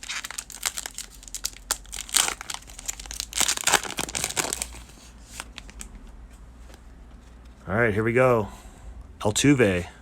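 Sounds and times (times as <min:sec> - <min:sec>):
foil wrapper tearing and crinkling: 0:00.0 - 0:05.9.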